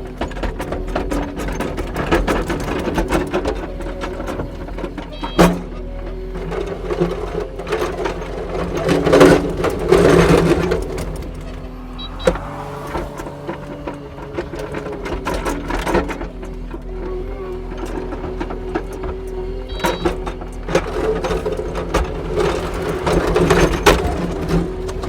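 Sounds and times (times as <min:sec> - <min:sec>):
diesel engine under load: 0:00.0 - 0:25.0.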